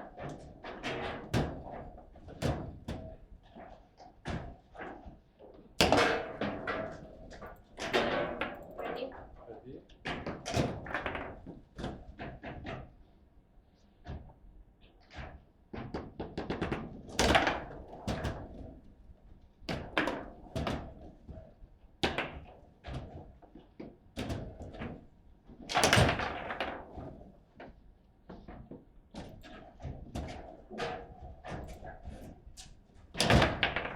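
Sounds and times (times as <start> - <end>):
table football knocks and thuds: 15.2 - 18.8, 19.7 - 25.0, 25.6 - 27.2, 33.1 - 33.9.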